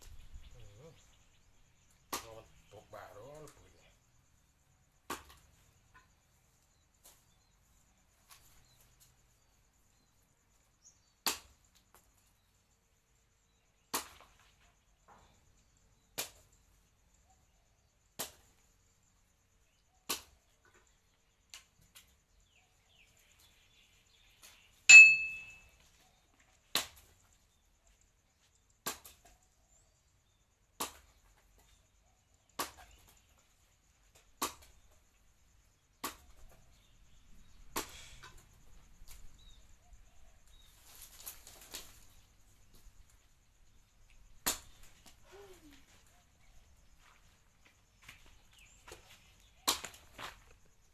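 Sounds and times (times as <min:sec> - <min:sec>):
metal being struck: 0:24.9 - 0:25.6.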